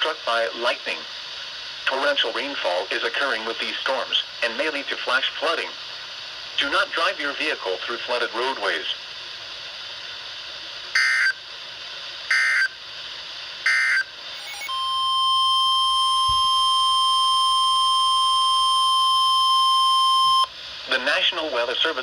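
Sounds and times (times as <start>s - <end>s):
digital data bursts: 11.0s - 11.4s, 12.3s - 12.7s
steady warning alarm tone: 11.0s - 11.4s, 12.3s - 12.8s, 13.6s - 20.5s.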